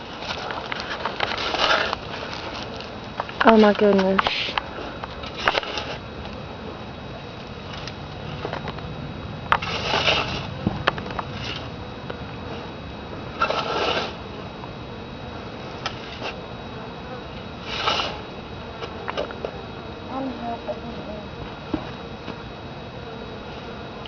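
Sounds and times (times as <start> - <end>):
soil scraping and rustling: 0.0 - 8.9, 9.5 - 14.5, 15.6 - 16.4, 17.3 - 19.6.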